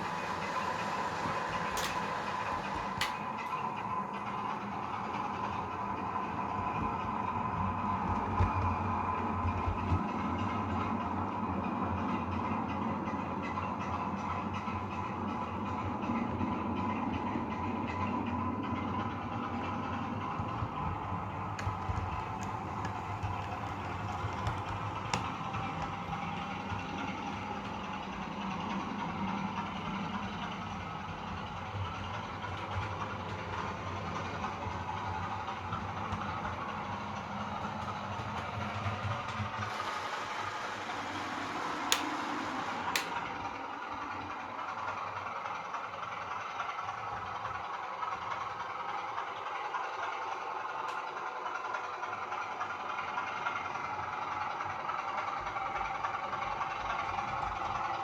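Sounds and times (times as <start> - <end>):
sharp clicks: 43.0 - 43.3.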